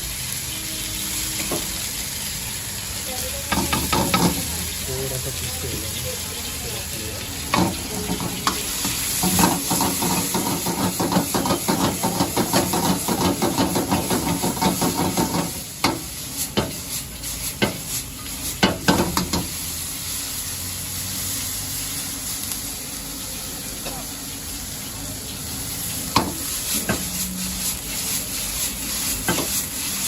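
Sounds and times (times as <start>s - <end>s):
food sizzling in a hot pan: 0.0s - 30.0s
metal spatula striking a pan: 3.5s - 4.5s, 7.5s - 16.8s, 18.6s - 19.5s, 26.2s - 27.1s.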